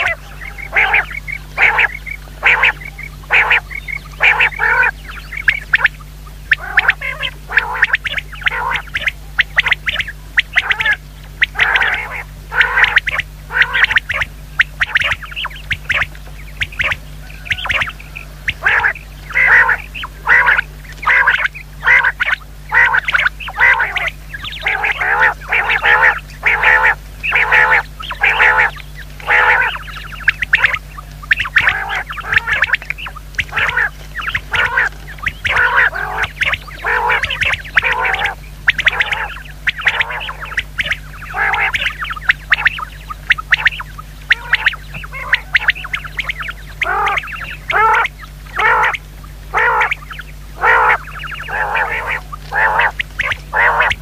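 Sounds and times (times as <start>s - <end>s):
quail calling harshly: 0.0s - 54.0s.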